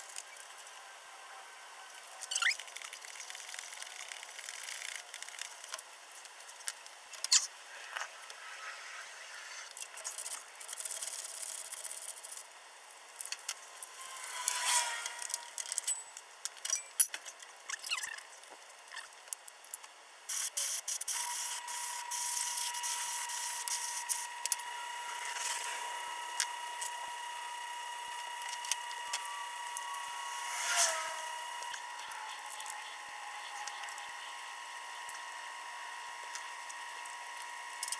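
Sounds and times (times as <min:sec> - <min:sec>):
steady high whine: 0:00.0 - 0:17.4, 0:20.3 - 0:37.9
hand tools clicking and scraping: 0:13.2 - 0:18.2.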